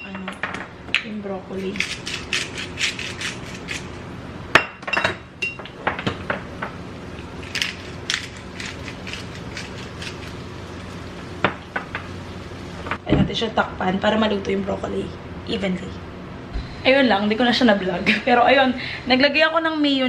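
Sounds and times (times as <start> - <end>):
low background hum: 0.0 - 20.0
broccoli cooking in butter: 6.9 - 13.0.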